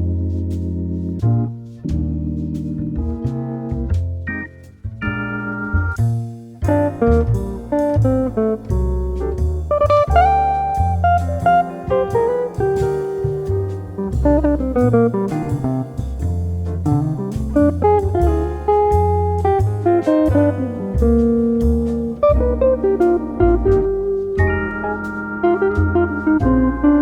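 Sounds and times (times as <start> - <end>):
bass line: 0.0 - 27.0
plucked guitar melody: 1.0 - 27.0
light drums: 5.8 - 27.0.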